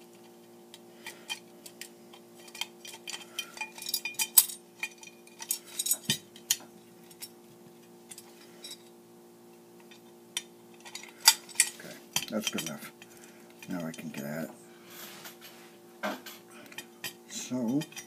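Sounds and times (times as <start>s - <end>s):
steady electrical hum: 0.0s - 18.0s
metal parts clinking on workbench: 2.4s - 7.3s, 10.8s - 12.8s, 17.0s - 18.0s.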